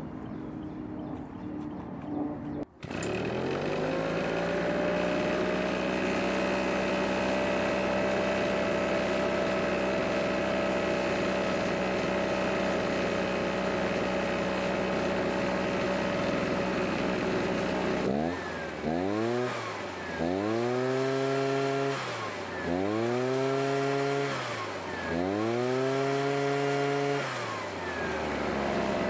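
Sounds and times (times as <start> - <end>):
leaf blower engine running: 2.7 - 29.0.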